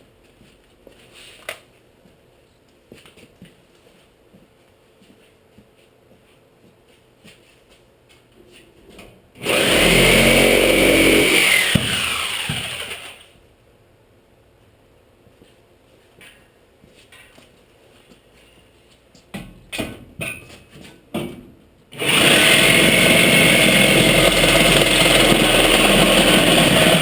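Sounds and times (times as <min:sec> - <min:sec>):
electric power tool whining: 0:09.4 - 0:13.4, 0:22.0 - 0:27.0.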